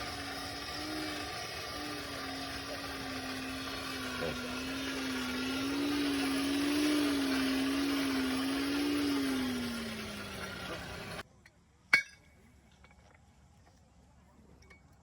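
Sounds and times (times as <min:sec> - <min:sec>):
hand-cranked forge blower whirring: 0:00.0 - 0:11.2.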